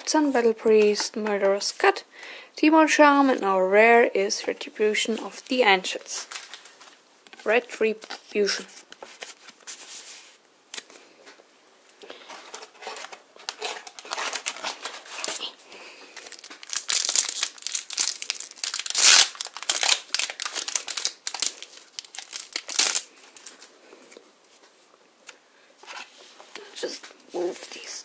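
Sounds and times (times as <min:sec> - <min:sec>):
foil wrapper crinkling and tearing: 0:06.2 - 0:07.0, 0:12.1 - 0:23.7.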